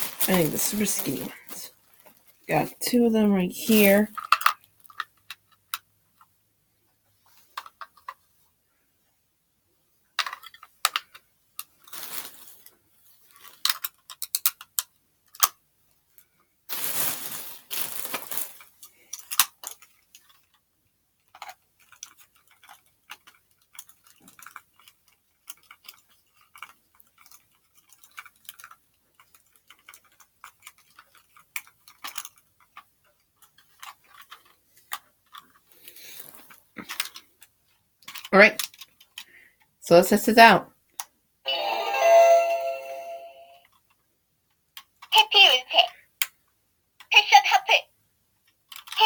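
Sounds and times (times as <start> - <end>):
scraping or rustling: 0.0 - 3.0, 11.8 - 13.9, 16.7 - 19.3, 33.4 - 37.2
plastic clicks and taps: 10.2 - 11.2.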